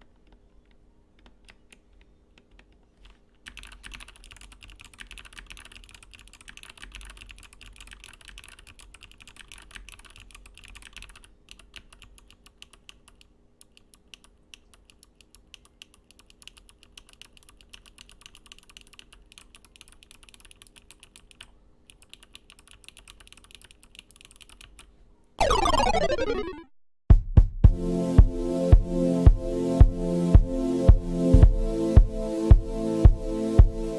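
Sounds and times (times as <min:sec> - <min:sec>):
mechanical keyboard typing: 0:02.5 - 0:13.2, 0:14.0 - 0:24.9
falling swept tone: 0:25.4 - 0:26.7.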